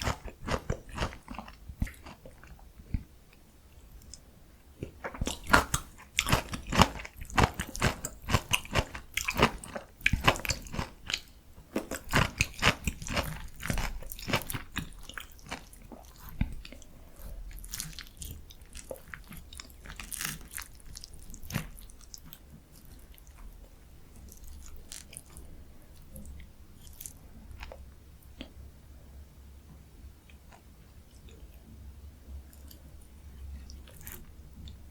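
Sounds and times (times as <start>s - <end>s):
crunching fried cutlet: 0.0s - 3.1s, 4.8s - 23.6s.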